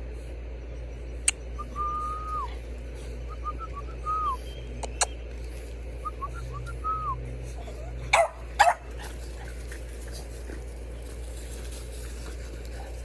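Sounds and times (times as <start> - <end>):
puppies whining: 1.3 - 11.4.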